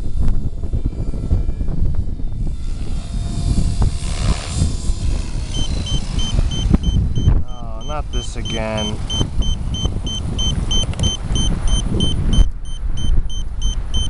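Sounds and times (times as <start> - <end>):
helicopter rotor and motor whine: 0.0 - 14.0
wind buffeting microphone: 0.0 - 14.0
rapid high electronic beeping: 5.5 - 14.0.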